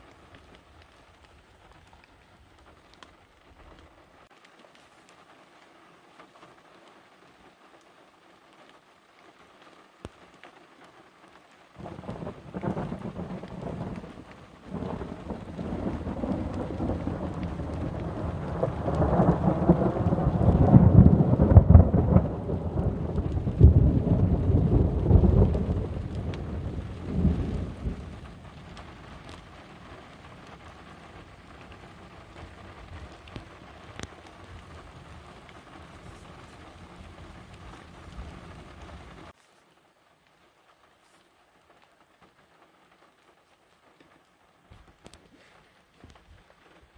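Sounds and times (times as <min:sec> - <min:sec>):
rain falling: 0:00.0 - 0:46.9
rolling thunder: 0:11.8 - 0:39.3.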